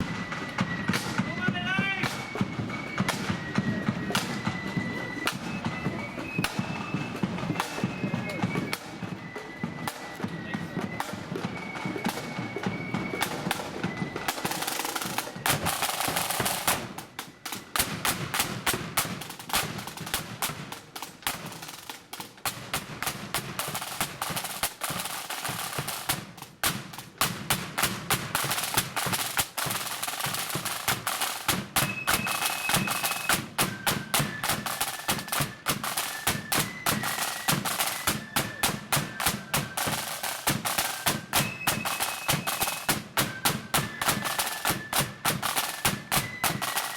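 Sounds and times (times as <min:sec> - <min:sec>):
high flute notes: 0:00.0 - 0:17.7
snare drum beats and rolls: 0:00.0 - 0:46.9.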